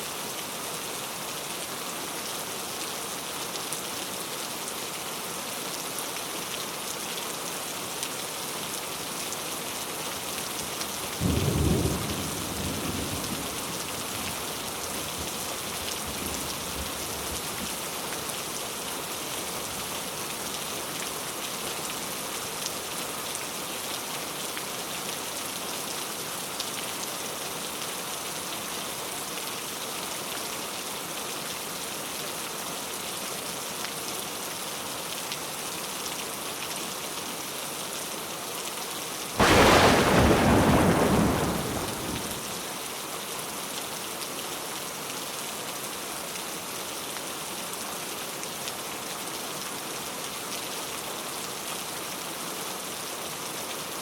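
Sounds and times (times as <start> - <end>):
rain falling: 0.0 - 30.6, 39.4 - 42.9
thunder rumbling: 39.4 - 42.6.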